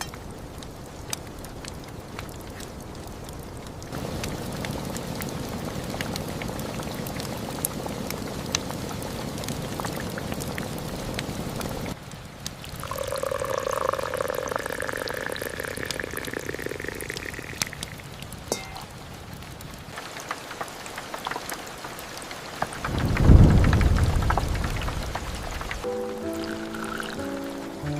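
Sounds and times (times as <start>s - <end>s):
scattered drips: 0.0s - 27.9s
steady rain: 0.0s - 27.9s
liquid pouring into a vessel: 12.8s - 18.9s, 26.4s - 27.2s.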